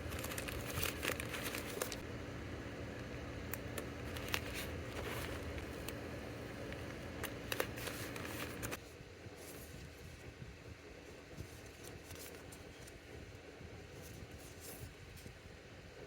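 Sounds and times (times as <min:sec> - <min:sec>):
paper and plastic rustling: 0:00.0 - 0:02.0, 0:03.7 - 0:08.8, 0:11.3 - 0:13.0
steady background hum: 0:00.0 - 0:16.0.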